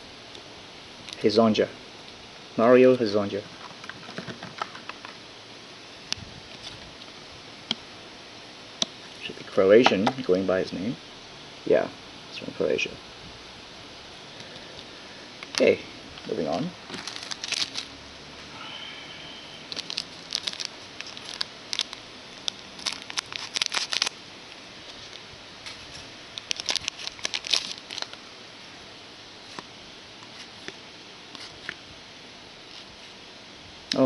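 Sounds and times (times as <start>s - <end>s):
wrapper crinkling: 16.8s - 17.9s, 19.7s - 24.2s, 24.8s - 28.2s.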